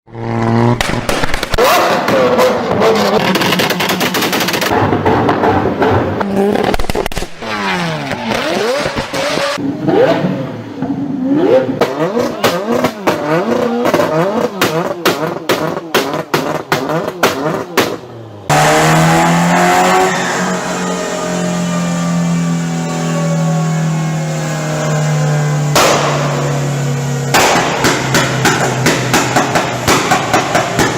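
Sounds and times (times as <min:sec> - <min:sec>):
car exhaust revving: 0:00.1 - 0:30.9
exhaust pops and crackles: 0:00.6 - 0:09.6, 0:25.7 - 0:26.6, 0:27.3 - 0:30.9
engine steady drone: 0:18.2 - 0:30.9.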